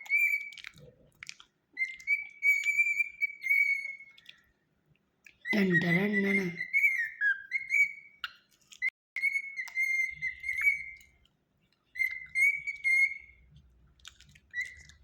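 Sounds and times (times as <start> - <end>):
cockatiel whistling: 0.0 - 0.6, 1.8 - 4.3, 5.4 - 11.2, 11.9 - 13.5, 14.5 - 15.0.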